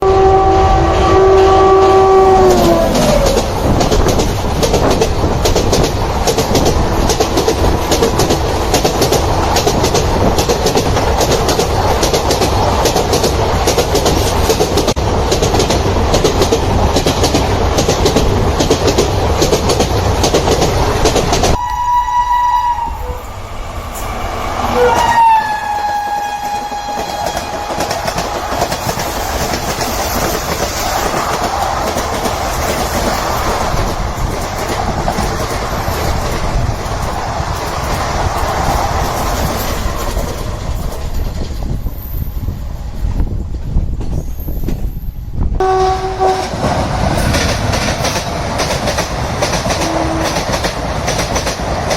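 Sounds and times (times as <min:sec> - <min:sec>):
train horn blowing: 0:00.0 - 0:03.3, 0:21.6 - 0:23.4, 0:24.6 - 0:28.4, 0:45.6 - 0:46.6, 0:49.8 - 0:50.5
train wheels clickety-clack: 0:02.4 - 0:21.6, 0:23.8 - 0:51.9.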